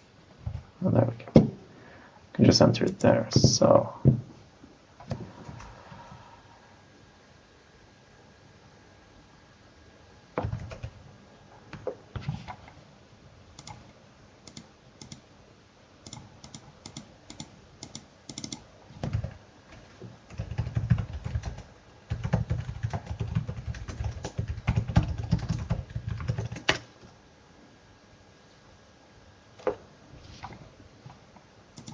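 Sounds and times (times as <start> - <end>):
typing on computer keyboard: 10.4 - 10.9, 13.6 - 13.8, 14.4 - 15.2, 16.0 - 26.9.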